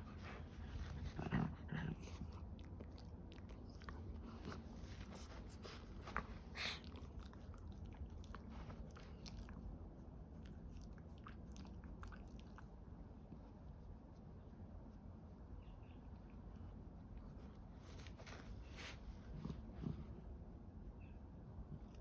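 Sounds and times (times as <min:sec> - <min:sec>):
dog chewing and smacking: 0:10.4 - 0:12.7.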